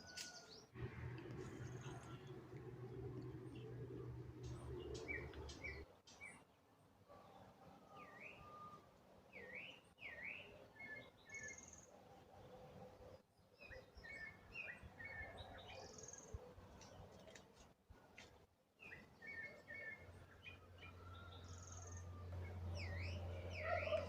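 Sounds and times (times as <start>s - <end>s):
birds chirping and whistling: 4.4s - 6.4s, 18.8s - 24.0s.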